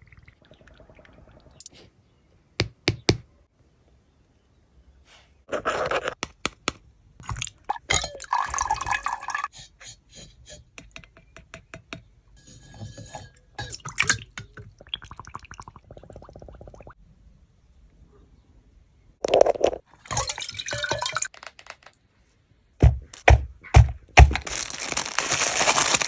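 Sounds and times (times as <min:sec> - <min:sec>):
liquid pouring and dripping: 0:07.2 - 0:09.5, 0:12.8 - 0:17.0, 0:19.9 - 0:21.5
clicks and taps on glass: 0:10.7 - 0:12.1.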